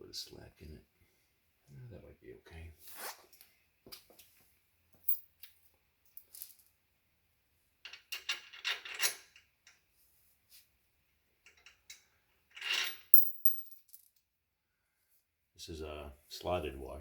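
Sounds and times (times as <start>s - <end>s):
small metal parts clinking: 11.5s - 14.2s.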